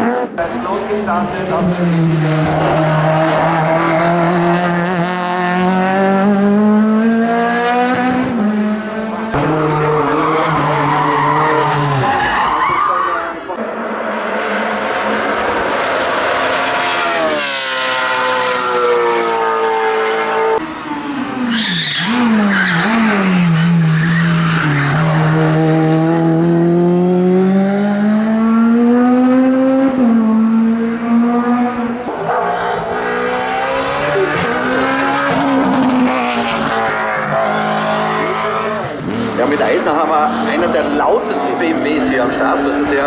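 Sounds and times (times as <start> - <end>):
race car engine revving: 0.0 - 43.0
tyre squeal: 9.6 - 13.5, 21.3 - 25.2.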